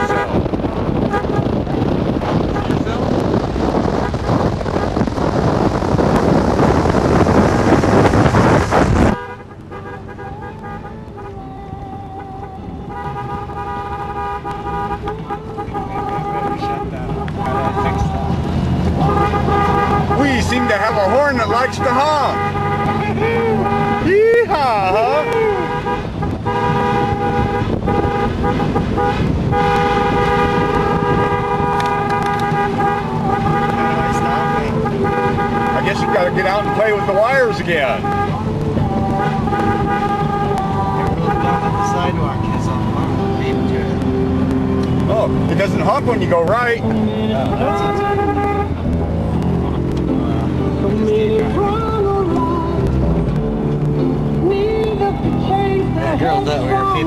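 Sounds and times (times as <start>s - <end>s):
car horn steady tone: 0.0s - 18.4s, 19.0s - 49.4s
wind buffeting microphone: 0.0s - 57.0s.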